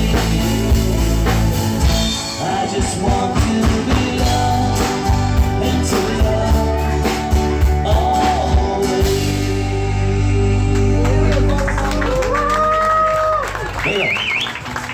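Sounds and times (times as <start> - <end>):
drum hits: 0.0 - 9.5
live rock band playing: 0.0 - 14.9.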